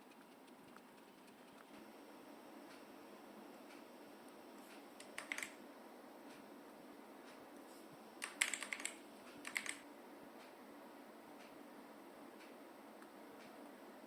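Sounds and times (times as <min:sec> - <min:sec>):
mechanical keyboard clicking: 0:05.0 - 0:05.6, 0:08.2 - 0:09.8.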